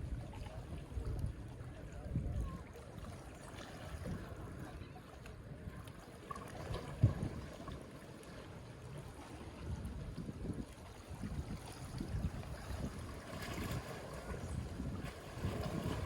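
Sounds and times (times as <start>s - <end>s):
sea waves lapping on beach: 0.0s - 16.0s.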